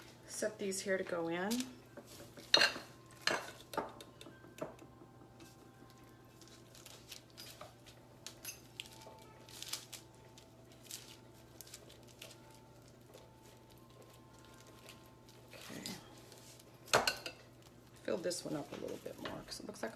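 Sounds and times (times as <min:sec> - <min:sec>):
utensils tapping and clicking: 0:01.5 - 0:05.6.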